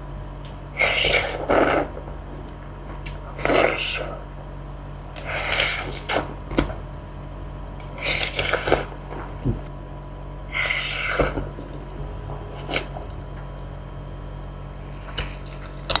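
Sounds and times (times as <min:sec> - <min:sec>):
noodle slurping: 0:00.8 - 0:01.9, 0:03.1 - 0:04.2, 0:05.2 - 0:06.7, 0:07.9 - 0:08.9, 0:10.5 - 0:11.5, 0:12.5 - 0:13.2
chewing: 0:05.2 - 0:06.8, 0:07.8 - 0:09.0, 0:10.6 - 0:13.5.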